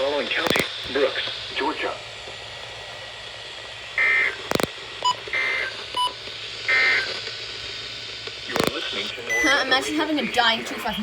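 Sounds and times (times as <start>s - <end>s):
data tone bursts: 4.0s - 7.2s, 8.5s - 10.0s.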